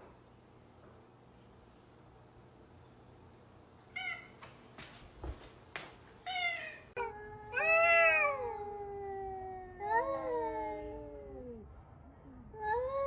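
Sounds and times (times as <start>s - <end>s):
cat meowing: 6.3s - 11.6s.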